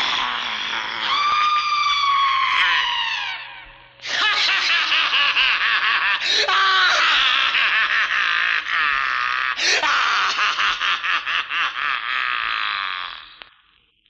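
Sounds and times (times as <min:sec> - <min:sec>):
man laughing villainously: 0:04.0 - 0:13.3.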